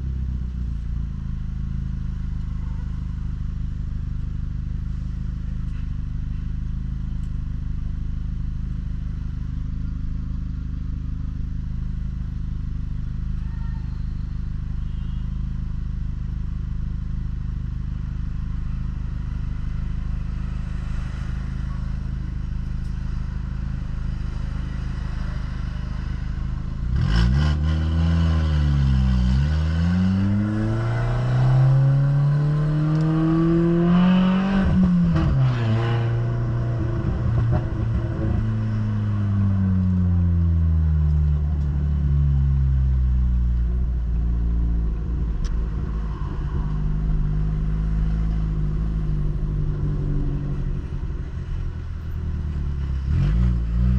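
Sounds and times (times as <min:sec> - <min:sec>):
exhaust rumbling: 0:00.0 - 0:53.9
car engine revving: 0:16.3 - 0:53.9.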